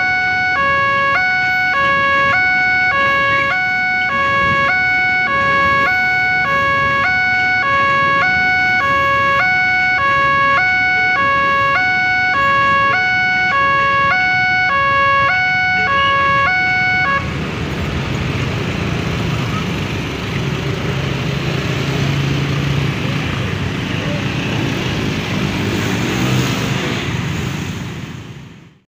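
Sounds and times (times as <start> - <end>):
level crossing two-tone siren: 0.0 - 17.3
broad rushing noise: 0.0 - 28.8.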